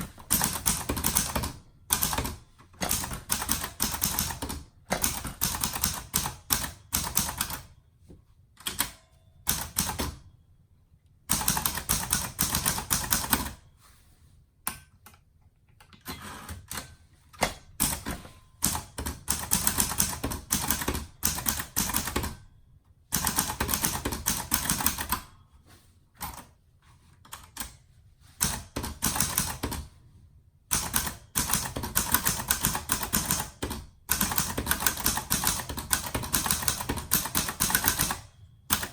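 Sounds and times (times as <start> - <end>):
typewriter keystrokes: 0.0 - 7.7, 8.6 - 10.2, 16.1 - 22.4, 23.1 - 25.3, 28.4 - 29.9, 30.7 - 38.9.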